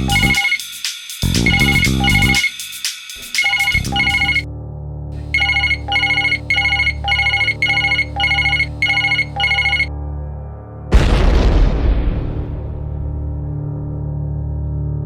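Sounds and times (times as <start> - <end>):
electronic telephone ringtone: 0.0 - 0.6, 1.4 - 2.6, 3.4 - 4.4, 5.2 - 9.9
ringtone tune: 0.0 - 2.6, 3.3 - 4.4, 5.2 - 9.9.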